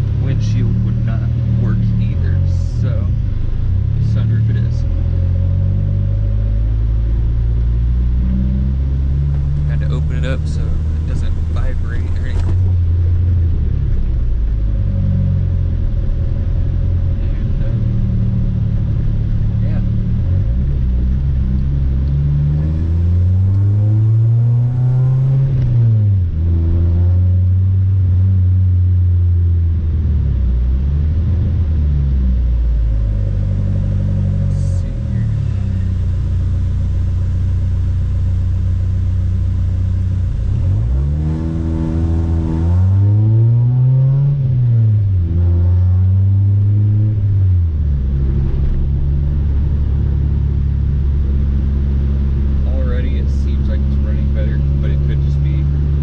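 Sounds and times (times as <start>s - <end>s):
car engine and exhaust revving: 0.0s - 56.0s.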